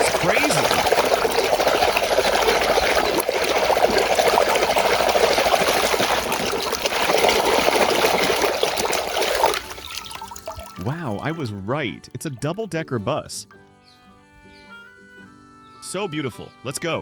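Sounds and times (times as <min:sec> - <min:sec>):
water running and splashing: 0:00.0 - 0:11.4.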